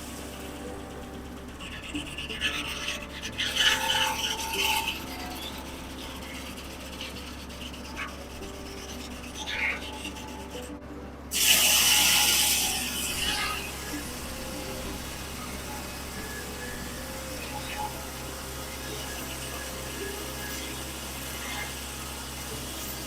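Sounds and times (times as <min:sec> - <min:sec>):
rasping saw noise: 0:00.0 - 0:23.0
sawmill humming: 0:00.0 - 0:23.0.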